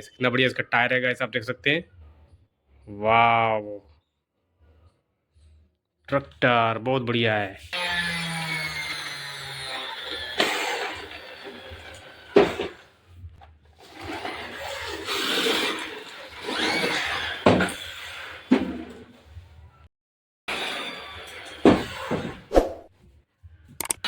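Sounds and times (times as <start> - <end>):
toy tractor whirring: 7.7 - 12.9, 13.8 - 19.4, 20.5 - 22.4.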